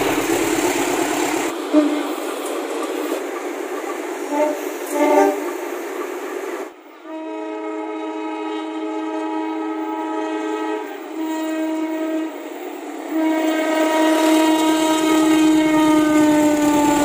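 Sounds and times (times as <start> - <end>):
rolling train noise: 0.0 - 17.0
multi-tone train air horn: 1.6 - 2.2, 4.3 - 5.6, 6.9 - 17.0
train air horn blasts: 1.6 - 2.2, 4.3 - 5.5, 6.9 - 17.0.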